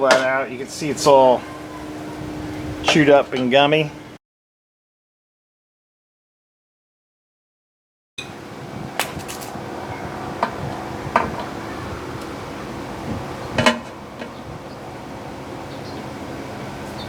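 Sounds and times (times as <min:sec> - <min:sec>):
steady low hum: 0:00.0 - 0:04.2, 0:08.2 - 0:17.0.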